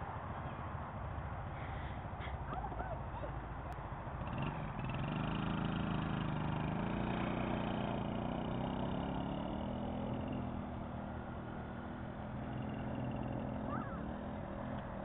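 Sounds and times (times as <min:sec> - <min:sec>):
small two-stroke engine running: 0:04.2 - 0:15.0.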